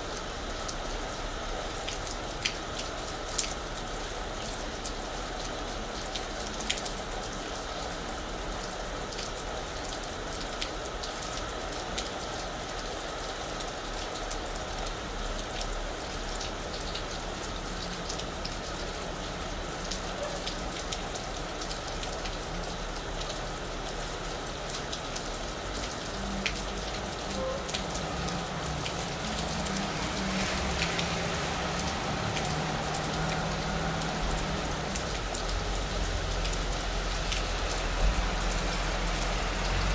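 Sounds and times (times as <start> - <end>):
rain falling on a roof: 0.0 - 39.9.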